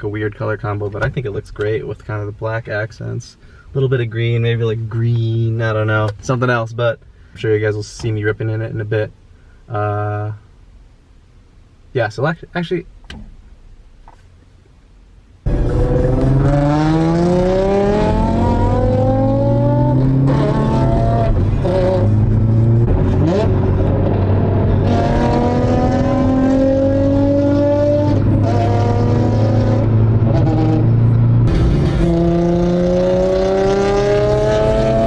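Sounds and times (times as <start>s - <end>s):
car engine accelerating hard: 15.5s - 35.0s.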